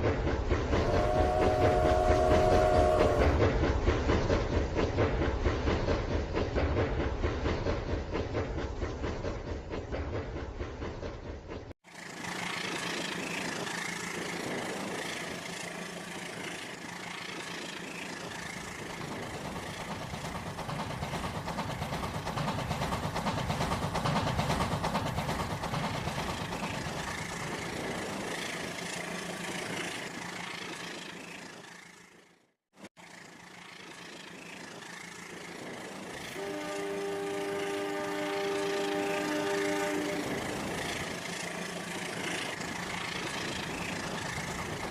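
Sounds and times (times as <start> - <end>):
toy train whirring on track: 11.8 - 44.9.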